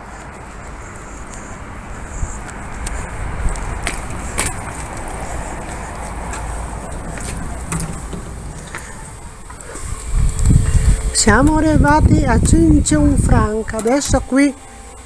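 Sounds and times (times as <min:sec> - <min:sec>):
sharp clicks and knocks: 0:02.5 - 0:12.8.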